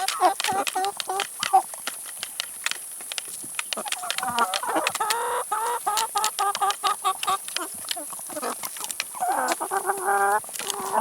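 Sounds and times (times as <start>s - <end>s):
pecking clicks: 0.0s - 5.2s
chickens clucking: 0.0s - 11.0s.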